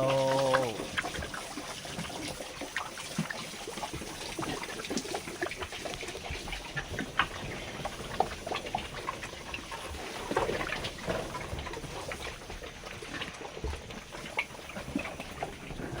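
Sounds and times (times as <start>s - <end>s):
pigs grunting: 0.0s - 0.9s.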